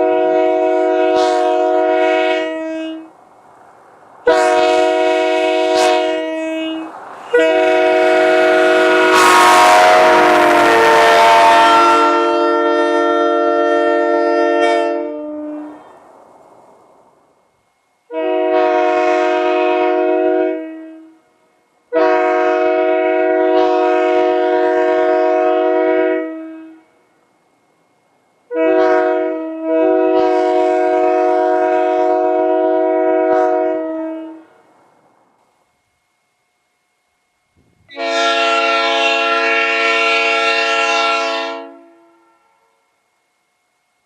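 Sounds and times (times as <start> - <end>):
locomotive air horn blasts: 0.0 - 3.2, 4.2 - 16.1, 18.1 - 27.0, 28.5 - 34.7, 37.8 - 42.8.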